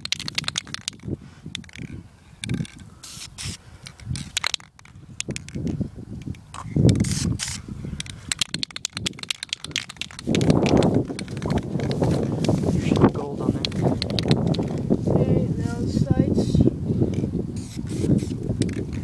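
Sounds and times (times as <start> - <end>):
handling clicks and thumps: 0.0 - 14.9, 18.6 - 19.0
aerosol spray can hissing: 3.0 - 3.6, 7.0 - 7.6, 17.6 - 18.8
leaves rustling: 9.2 - 16.1.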